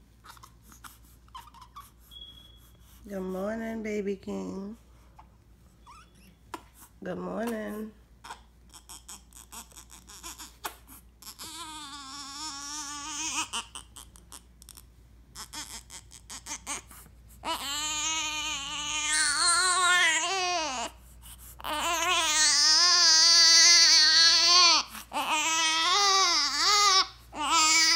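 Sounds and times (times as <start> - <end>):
baby crying: 8.2 - 14.8, 15.4 - 21.0, 21.6 - 27.9.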